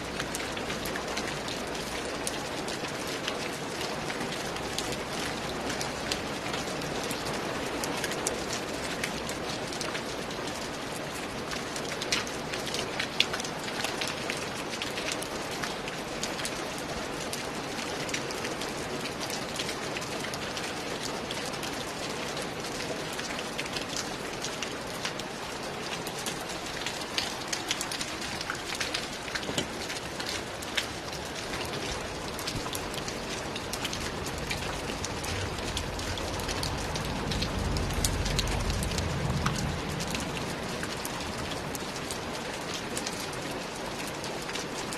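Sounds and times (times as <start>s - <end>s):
rain drops ticking on hard surface: 0.0s - 44.9s
low rumble: 34.1s - 41.2s.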